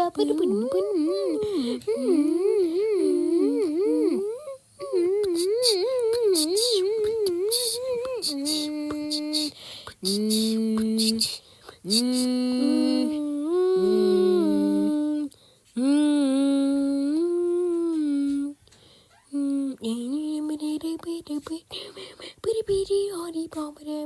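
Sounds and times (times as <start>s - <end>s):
person humming: 0.0s - 18.6s, 19.3s - 21.6s.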